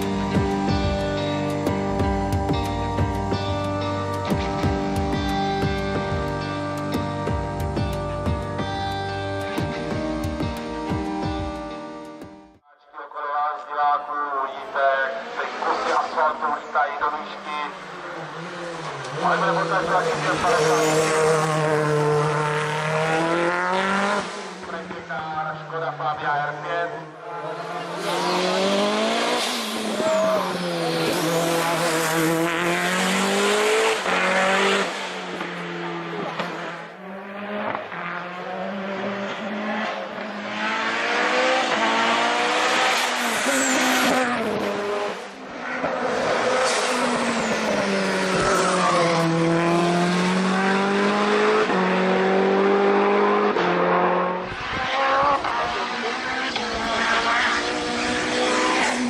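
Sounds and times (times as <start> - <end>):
rally car engine revving: 14.6 - 59.0.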